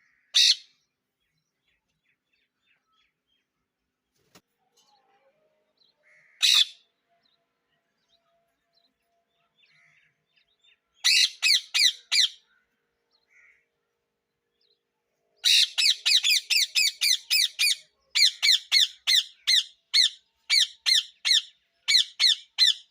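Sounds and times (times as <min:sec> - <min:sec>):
parrots squawking: 0:00.4 - 0:00.7, 0:06.2 - 0:06.8, 0:11.0 - 0:12.4, 0:15.4 - 0:22.9.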